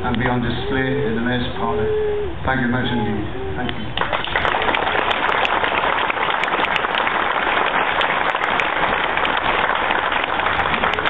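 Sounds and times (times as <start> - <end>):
crowd applauding: 4.0 - 11.0.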